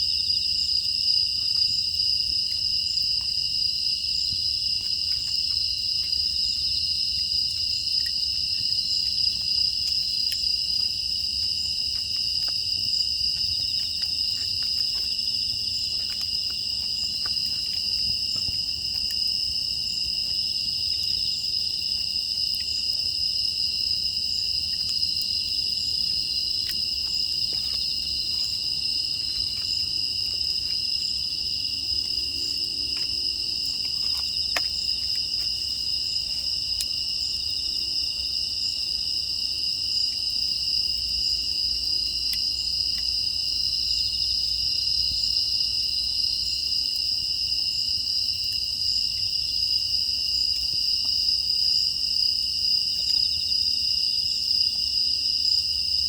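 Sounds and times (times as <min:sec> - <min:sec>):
crickets chirping: 0:00.0 - 0:56.0
wood fire crackling: 0:04.5 - 0:37.1.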